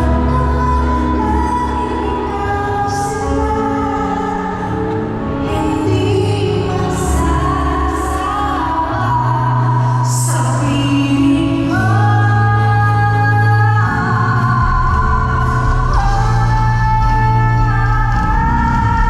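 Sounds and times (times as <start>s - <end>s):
band playing pop ballad: 0.0s - 19.0s
woman singing: 0.0s - 19.0s.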